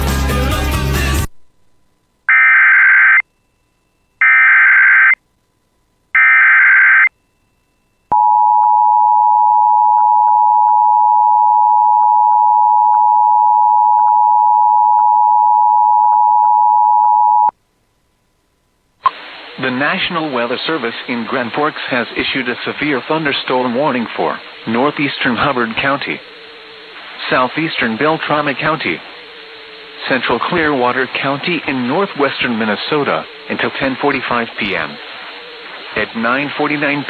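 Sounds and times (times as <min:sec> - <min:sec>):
digital data tone bursts: 0:02.3 - 0:03.2, 0:04.2 - 0:05.2.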